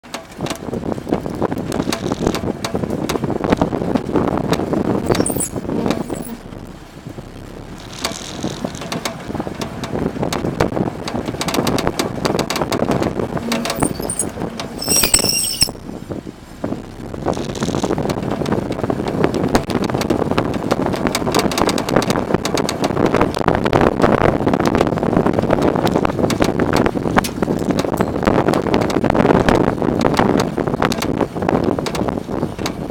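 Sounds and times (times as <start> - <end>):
road and wind noise: 0.0 - 32.9
high brake squeal: 5.1 - 6.4, 13.4 - 15.8
suspension rattling: 11.1 - 16.3.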